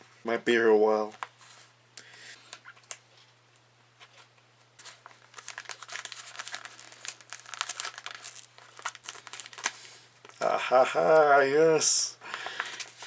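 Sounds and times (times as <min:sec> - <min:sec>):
package crinkling and tearing: 0:04.8 - 0:11.3, 0:12.3 - 0:13.0.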